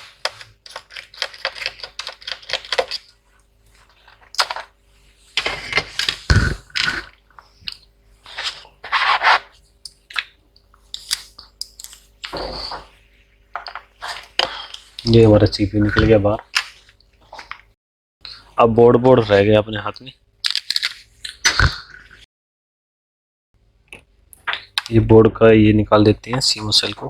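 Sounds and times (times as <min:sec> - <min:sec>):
rustling scrapes: 0:08.2 - 0:09.6, 0:14.0 - 0:15.0.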